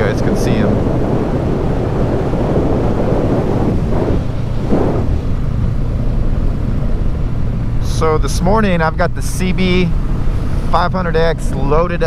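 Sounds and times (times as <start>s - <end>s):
wind rushing over microphone: 0.0s - 8.8s
motorcycle engine rumble: 0.0s - 12.0s.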